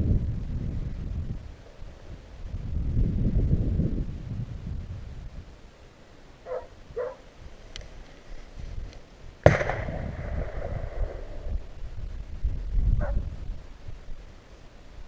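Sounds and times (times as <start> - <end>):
hound yelping: 6.5 - 7.3
gunshot with echo: 9.4 - 11.7.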